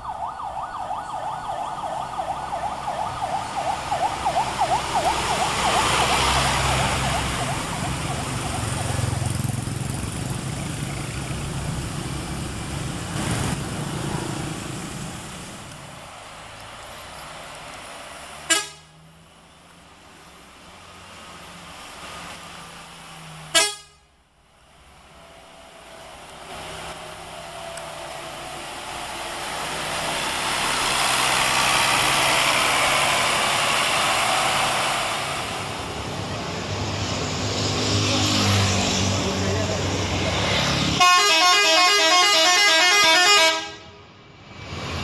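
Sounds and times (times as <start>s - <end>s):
vehicle passing close by: 1.4s - 18.5s, 24.9s - 41.0s
bus horn toots: 18.5s - 19.0s, 23.5s - 24.1s, 41.0s - 44.0s
low horn tone: 41.0s - 43.9s.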